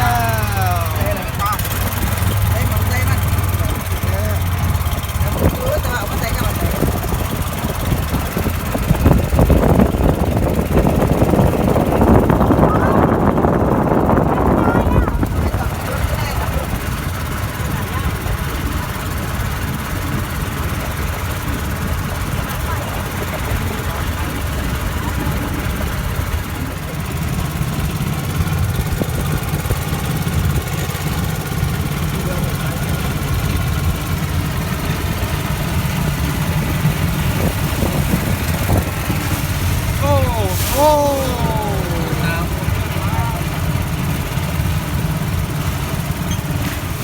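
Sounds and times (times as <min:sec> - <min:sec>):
boat engine running: 0:00.0 - 0:47.0
dense rushing noise: 0:36.1 - 0:45.6.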